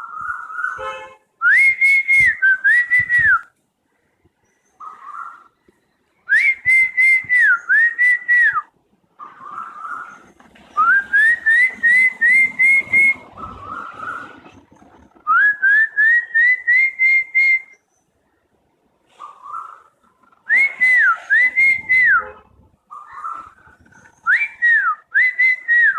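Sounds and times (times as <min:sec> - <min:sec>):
person whistling bird imitation: 0:01.4 - 0:03.5, 0:06.3 - 0:08.6, 0:15.2 - 0:17.8, 0:20.5 - 0:22.2, 0:24.2 - 0:25.9.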